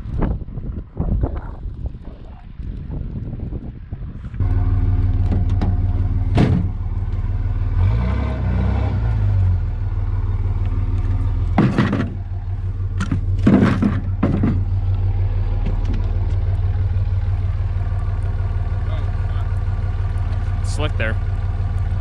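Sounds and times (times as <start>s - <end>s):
vehicle engine running: 3.7s - 22.0s
loud rattling knocks: 5.2s - 6.8s, 11.5s - 12.3s, 13.0s - 14.8s.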